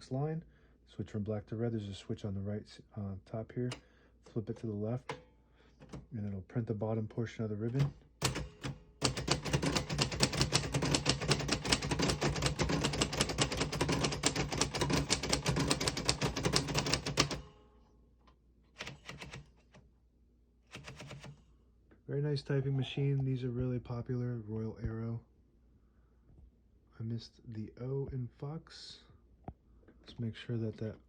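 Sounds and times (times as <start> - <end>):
typewriter typebars clacking: 7.8 - 17.5, 18.8 - 19.5, 20.8 - 21.3.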